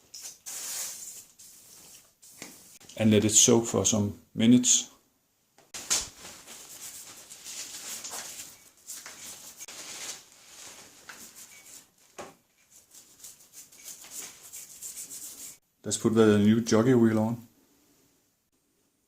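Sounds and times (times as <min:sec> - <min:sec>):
hands rubbing and scraping: 0:00.0 - 0:02.9, 0:05.8 - 0:15.6.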